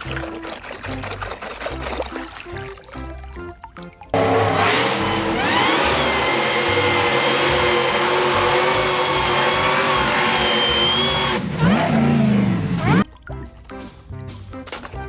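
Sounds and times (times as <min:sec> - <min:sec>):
motor running loudly: 0:04.2 - 0:13.0.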